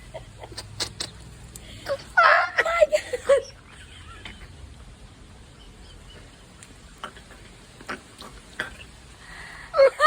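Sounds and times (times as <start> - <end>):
soft clicks and scrapes in soil: 6.5 - 6.8.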